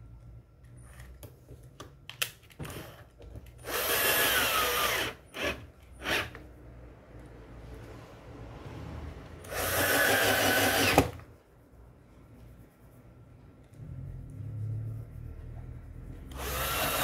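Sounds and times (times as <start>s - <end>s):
electric screwdriver whirring: 3.6s - 6.4s, 9.5s - 11.2s, 16.3s - 17.0s.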